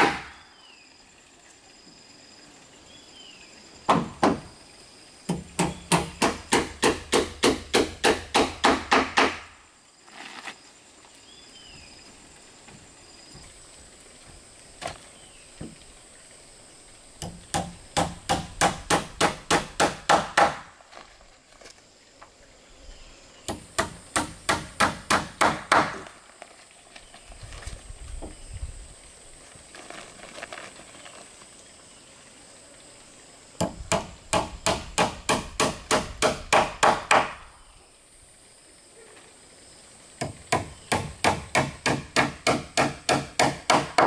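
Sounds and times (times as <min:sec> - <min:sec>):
hammer driving nails into wood: 0:00.0 - 0:00.4, 0:03.9 - 0:04.5, 0:05.3 - 0:09.5, 0:17.2 - 0:20.7, 0:23.5 - 0:26.1, 0:33.6 - 0:37.4, 0:40.2 - 0:44.0.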